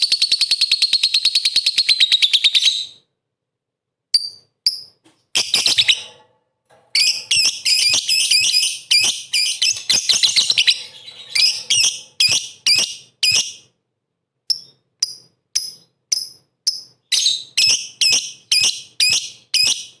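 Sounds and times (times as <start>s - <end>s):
bird shrill chirping: 7.0s - 13.7s, 14.5s - 20.0s.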